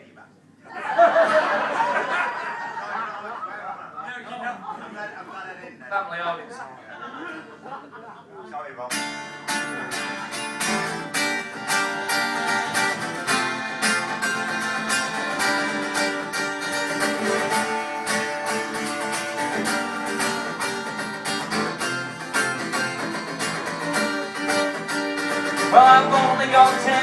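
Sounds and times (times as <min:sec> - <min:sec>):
acoustic guitars strumming: 0:08.9 - 0:27.0.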